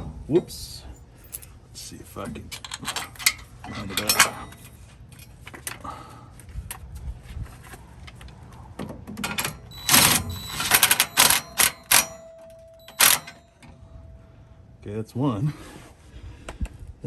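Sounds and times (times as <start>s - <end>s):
wrench clicking against metal bolt: 2.4s - 4.7s, 9.2s - 13.4s.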